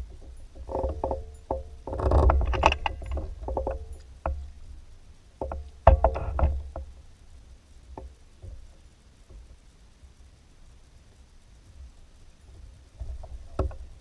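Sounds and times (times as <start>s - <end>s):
knocking and clattering on kayak: 5.4s - 7.0s, 13.0s - 14.0s.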